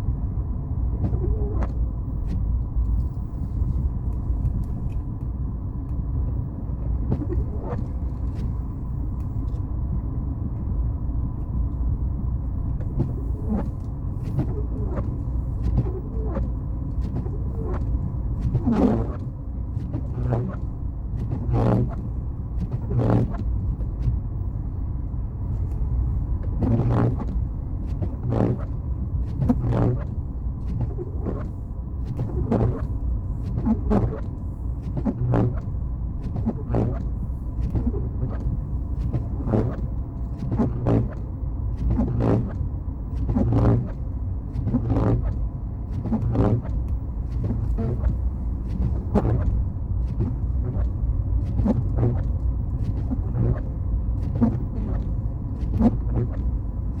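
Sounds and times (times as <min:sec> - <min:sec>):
road and engine rumble: 0:00.0 - 0:57.0.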